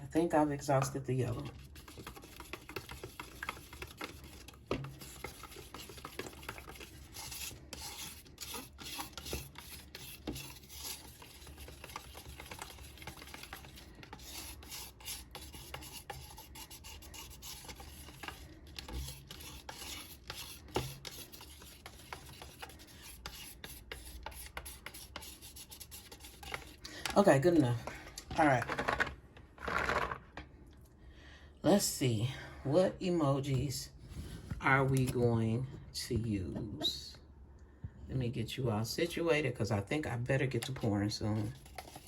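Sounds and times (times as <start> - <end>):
stirrer scraping in a cup: 0.0 - 30.2, 38.8 - 42.0
stirrer tapping cup: 0.8 - 27.2, 40.6 - 42.0.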